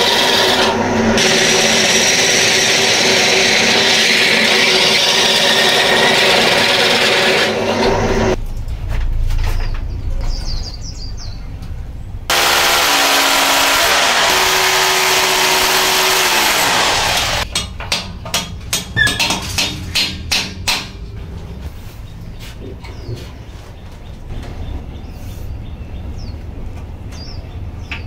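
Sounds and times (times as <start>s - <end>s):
power tool motor running: 0.0s - 8.4s, 12.3s - 17.4s.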